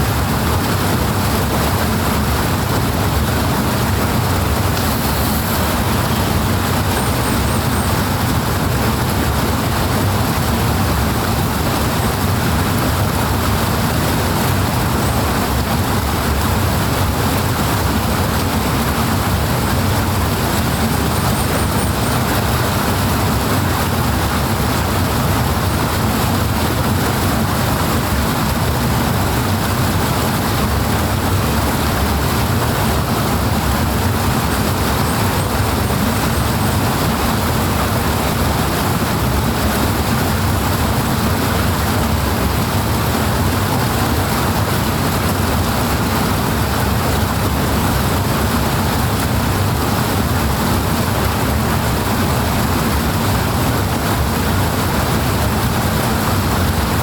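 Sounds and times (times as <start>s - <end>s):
flowing water roar: 0.0s - 57.0s.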